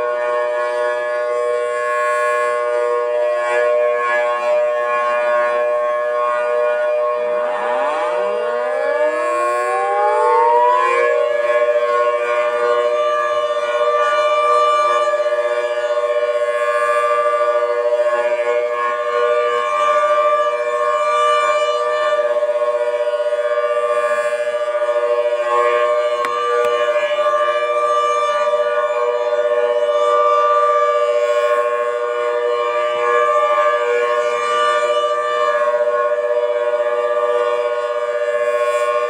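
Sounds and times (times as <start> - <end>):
civil defense siren: 0.0 - 39.0.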